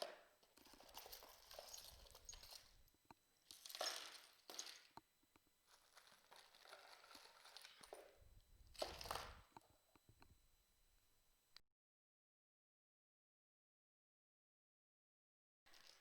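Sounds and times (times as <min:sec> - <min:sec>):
jewelry rustling and clinking: 0:00.6 - 0:02.9.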